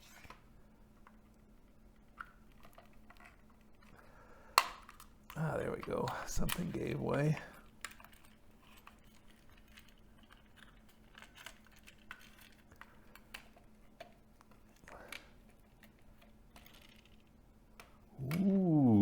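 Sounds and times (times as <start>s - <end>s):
faint low hum: 0.0s - 19.0s
plastic parts clicking: 4.6s - 18.6s.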